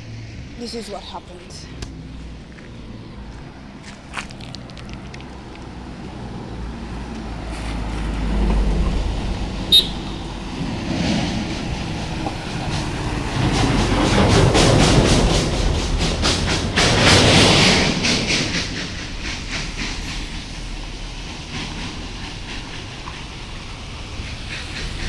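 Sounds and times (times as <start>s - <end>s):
vehicle engine rumble passing: 0.0s - 25.0s.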